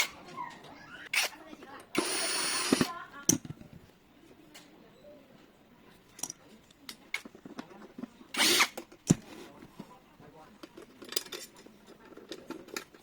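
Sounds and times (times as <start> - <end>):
metal parts clicking and tapping: 6.1 - 8.1, 10.6 - 13.0.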